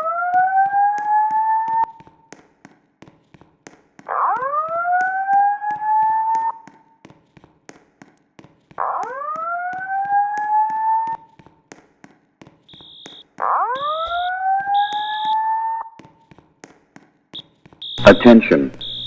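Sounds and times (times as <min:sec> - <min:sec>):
rising whoop alarm tone: 0:04.2 - 0:06.6, 0:08.8 - 0:11.2, 0:13.5 - 0:16.0
short high-pitched beeps: 0:12.7 - 0:13.2, 0:13.8 - 0:15.4, 0:17.8 - 0:19.0.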